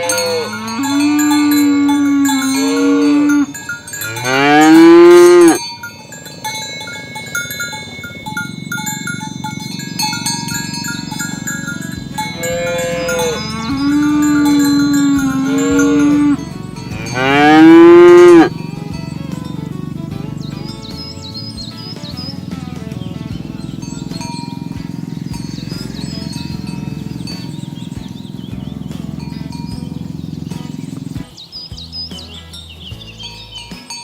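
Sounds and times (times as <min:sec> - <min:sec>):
cattle mooing: 0:00.0 - 0:18.6
small bells clinking: 0:00.0 - 0:22.3, 0:23.4 - 0:31.6, 0:32.3 - 0:34.0.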